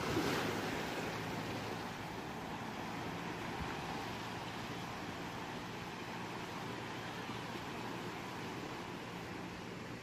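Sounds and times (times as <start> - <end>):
ocean surf washing: 0.0 - 10.0.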